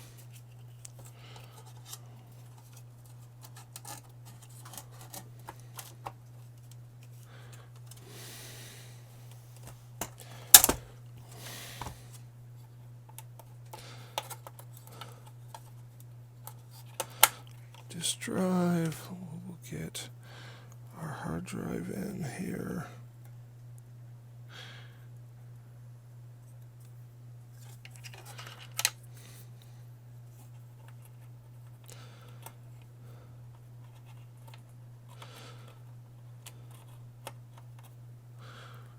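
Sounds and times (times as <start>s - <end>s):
plastic parts clicking and rubbing: 0.2s - 8.0s, 9.6s - 10.9s, 13.1s - 17.9s, 27.6s - 29.0s, 33.5s - 38.0s
sharp plastic click: 10.6s - 10.8s.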